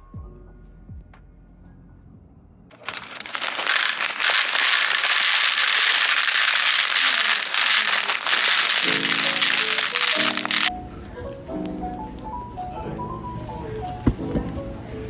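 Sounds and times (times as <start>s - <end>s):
crackling hiss with pops: 2.7s - 10.7s.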